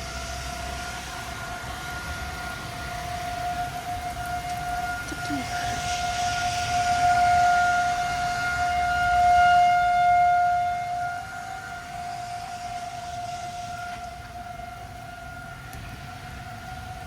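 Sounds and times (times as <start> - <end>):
warning siren steady tone: 0.0 - 17.0.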